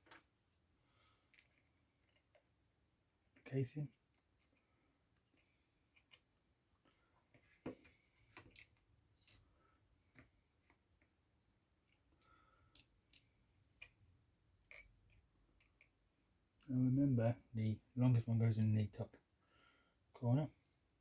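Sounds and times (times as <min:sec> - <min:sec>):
small tools clicking and tapping: 0:12.2 - 0:14.0, 0:14.7 - 0:16.0.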